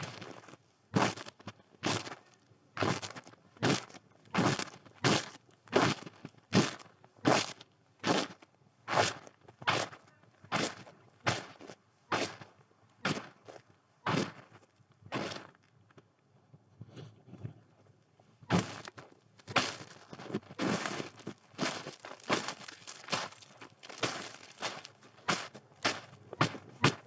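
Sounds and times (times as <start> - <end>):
footsteps crunching in snow: 20.6 - 27.0.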